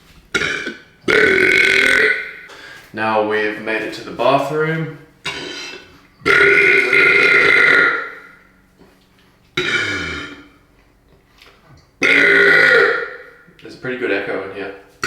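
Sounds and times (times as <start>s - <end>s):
man burping with echo: 0.3s - 2.6s, 5.2s - 8.5s, 9.6s - 10.6s, 12.0s - 13.5s.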